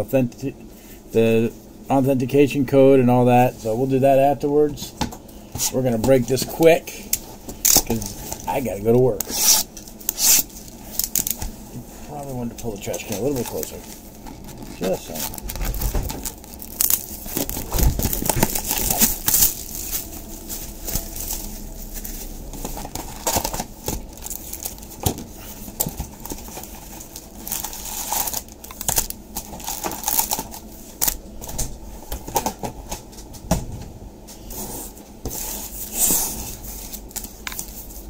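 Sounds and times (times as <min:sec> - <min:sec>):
plastic wrappers tearing and crinkling: 0:07.6 - 0:11.4, 0:12.9 - 0:31.6.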